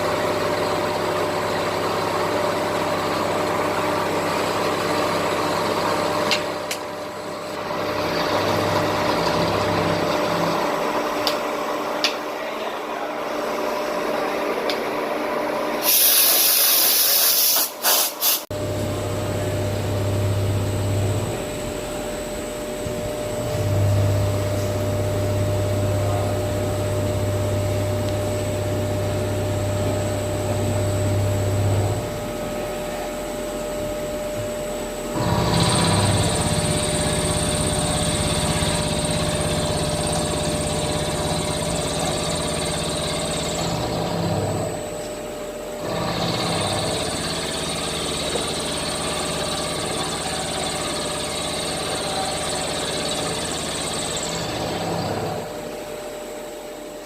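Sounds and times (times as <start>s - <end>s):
machine hum: 0.0s - 15.8s, 18.5s - 57.0s.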